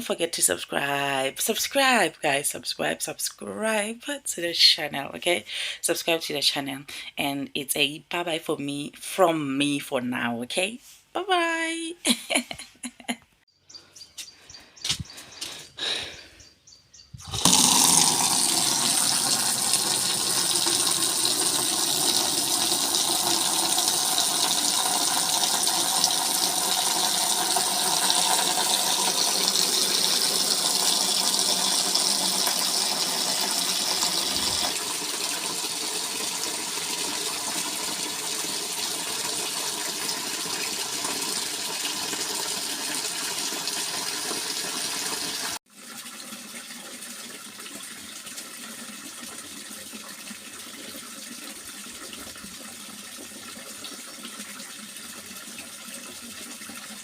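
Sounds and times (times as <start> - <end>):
tap water gushing into container: 17.2 - 57.0.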